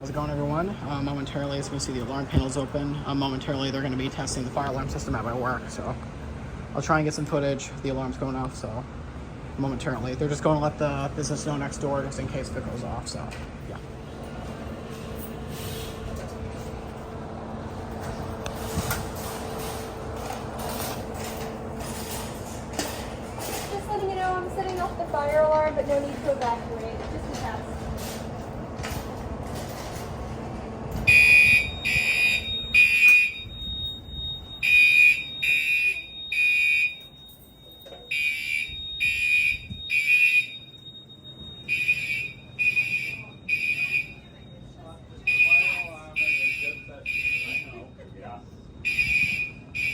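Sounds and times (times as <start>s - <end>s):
steady background hum: 0.0s - 49.9s
fire alarm horn buzzing: 31.0s - 49.9s.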